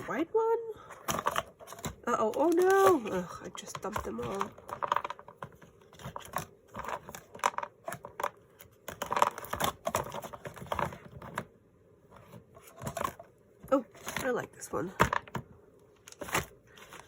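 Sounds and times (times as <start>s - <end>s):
tape rolls clicking and clattering: 1.0s - 11.5s.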